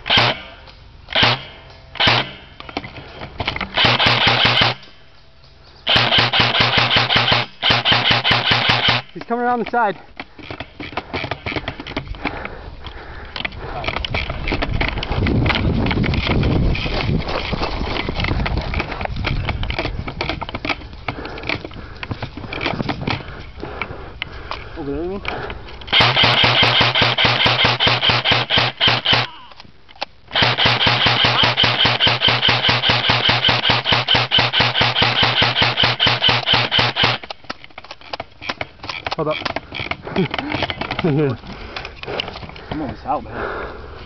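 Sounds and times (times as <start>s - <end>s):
airsoft gun full-auto bursts: 0.0s - 0.5s, 1.2s - 2.4s, 3.8s - 4.8s, 5.9s - 9.1s, 25.9s - 29.3s, 30.3s - 37.3s
airsoft gun single shots: 0.0s - 0.5s, 1.2s - 2.4s, 3.8s - 4.8s, 5.9s - 9.1s, 25.9s - 29.3s, 30.3s - 37.3s.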